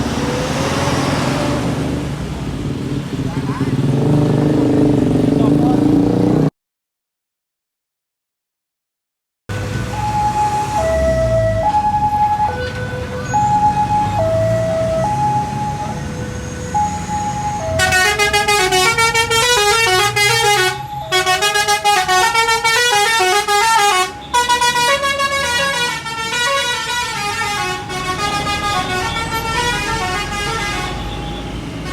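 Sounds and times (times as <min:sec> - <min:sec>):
bus engine rumbling: 0:00.0 - 0:06.4, 0:09.5 - 0:31.9
multi-tone bus horn tune: 0:09.5 - 0:31.9.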